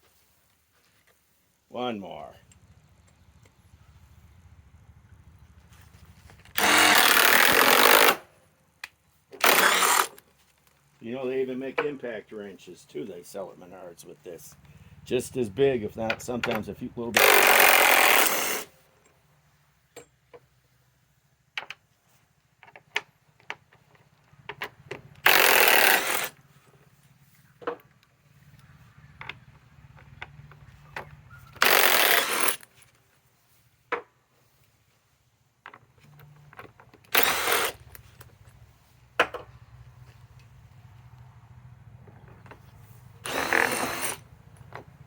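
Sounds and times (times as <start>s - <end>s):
impact driver hammering: 6.6s - 8.2s, 16.4s - 18.6s, 31.5s - 32.6s, 43.2s - 44.2s.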